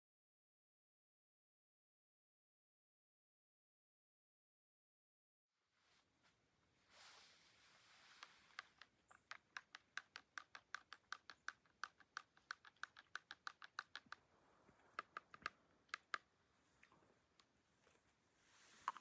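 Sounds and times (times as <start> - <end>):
faint quick clicks: 8.1 - 18.0.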